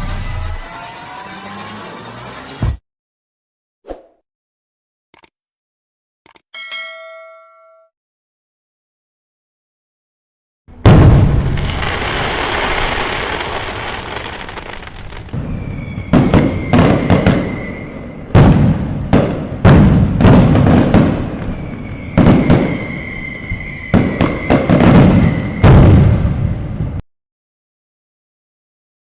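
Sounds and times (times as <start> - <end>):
fireworks bangs: 10.7 - 27.0
fireworks crackling: 10.9 - 17.8
high steady whistle: 15.4 - 18.1, 21.5 - 25.7.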